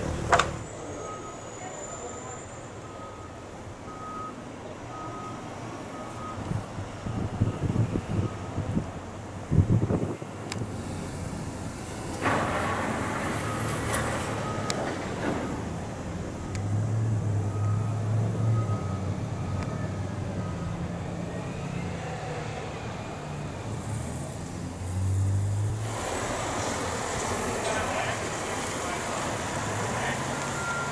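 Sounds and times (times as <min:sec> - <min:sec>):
heavy vehicle engine running: 0:00.0 - 0:01.2, 0:07.0 - 0:30.9
reversing alarm beeping: 0:00.1 - 0:08.8, 0:13.4 - 0:15.5, 0:17.1 - 0:22.0, 0:29.7 - 0:30.9.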